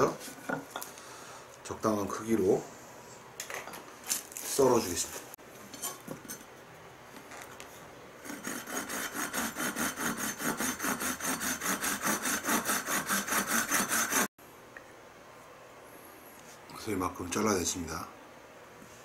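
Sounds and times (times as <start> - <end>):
saw cutting wood: 8.2 - 14.3.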